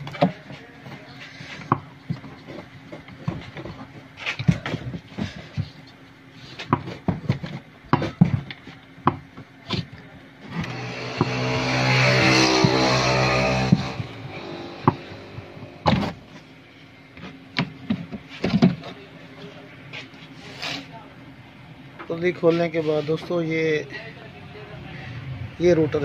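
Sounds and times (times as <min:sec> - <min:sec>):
loud buzzing whirring: 0:10.4 - 0:16.3.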